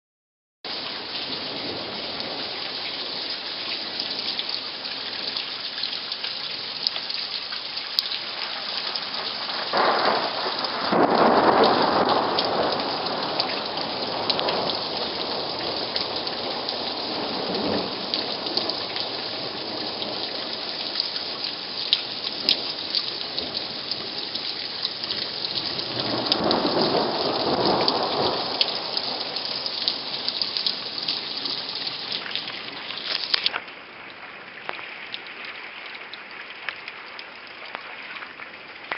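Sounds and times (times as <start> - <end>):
heavy rain: 0.7 - 38.9
thunder rumbling: 9.0 - 24.2, 24.8 - 32.8.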